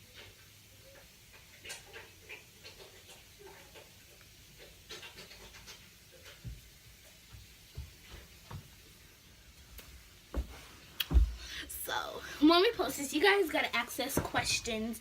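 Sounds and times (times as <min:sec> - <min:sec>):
soft thumps: 0:10.3 - 0:11.5, 0:14.1 - 0:14.8.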